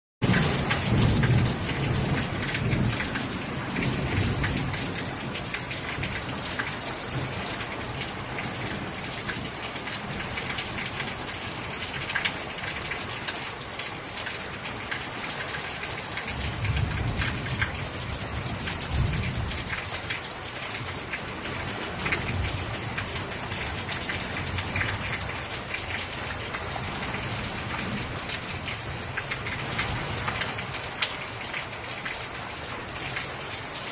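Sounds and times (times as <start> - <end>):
thunder rumbling: 0.2 - 5.2
heavy rain pouring: 0.2 - 33.9.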